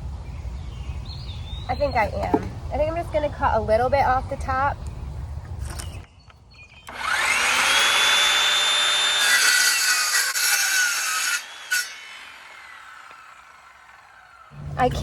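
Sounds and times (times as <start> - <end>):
power saw cutting wood: 6.9 - 14.7.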